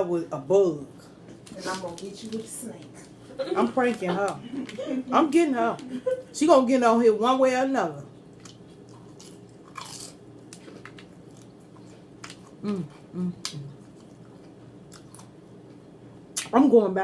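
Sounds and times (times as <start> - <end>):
chewing crispy food: 1.3 - 3.2, 8.2 - 15.8
woman humming: 12.6 - 13.7.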